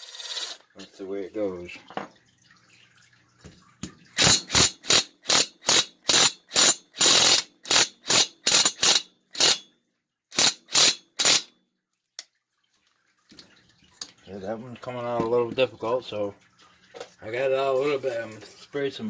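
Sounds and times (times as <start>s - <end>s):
ratchet wrench clicking: 4.2s - 9.7s, 10.4s - 11.5s.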